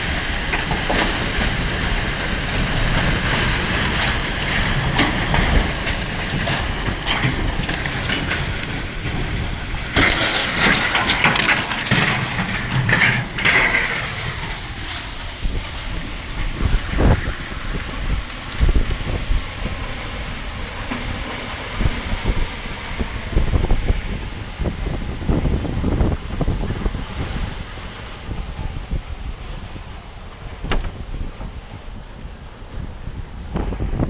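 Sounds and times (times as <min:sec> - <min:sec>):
rain: 0:00.0 - 0:34.0
storm wind roaring: 0:00.0 - 0:34.0
sharp knocks and bangs: 0:30.6 - 0:31.1.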